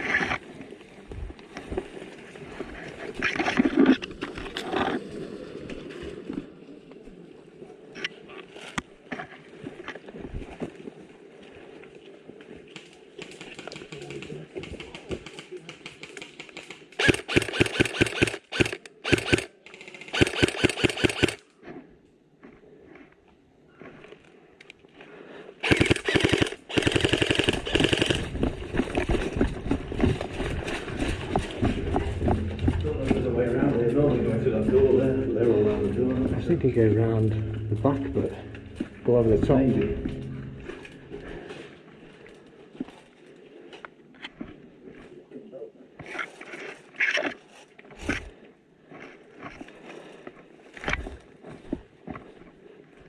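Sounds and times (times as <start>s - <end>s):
airsoft gun firing full auto: 15.8s - 21.4s, 25.6s - 28.4s
footsteps in undergrowth: 28.2s - 37.6s
heavy thumps: 31.4s - 41.4s.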